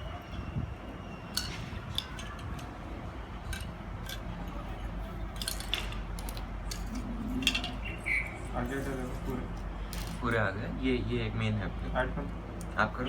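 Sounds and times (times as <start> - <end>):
small parts clicking and clinking: 1.3 - 7.9, 8.6 - 10.4.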